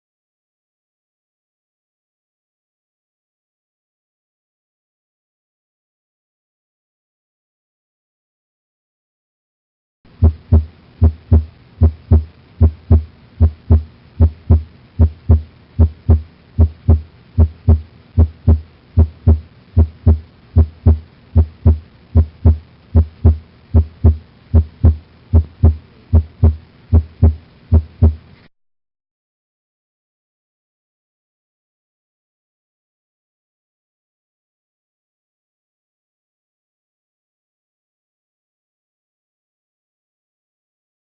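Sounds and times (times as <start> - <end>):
heartbeat lub-dub thumps: 10.2 - 28.2.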